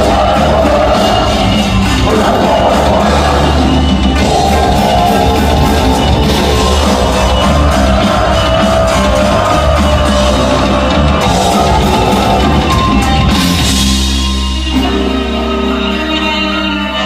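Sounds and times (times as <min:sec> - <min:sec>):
drum kit: 0:00.0 - 0:17.0
heavy metal band playing: 0:00.0 - 0:17.0
sustained guitar notes ringing: 0:09.6 - 0:17.0.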